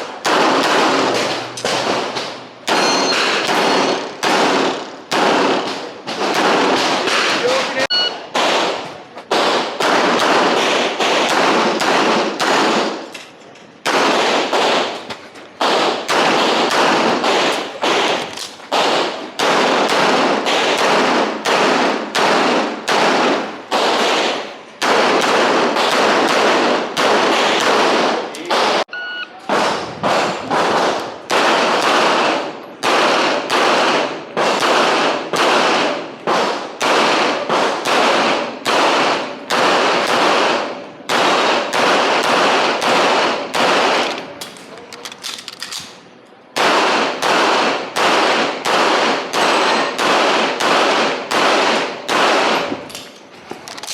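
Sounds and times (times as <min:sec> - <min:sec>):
handgun shots with echo: 0:00.2 - 0:13.1.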